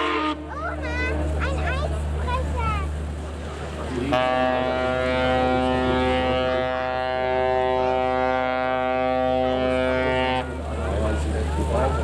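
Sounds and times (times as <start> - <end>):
ship's horn blast: 0.0 - 0.5, 4.0 - 11.2.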